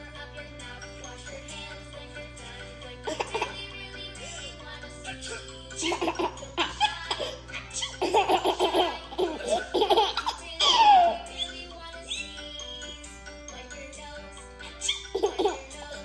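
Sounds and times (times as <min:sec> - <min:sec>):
background music: 0:00.0 - 0:16.0
baby laughing: 0:03.0 - 0:04.4, 0:05.1 - 0:12.4, 0:14.7 - 0:16.0.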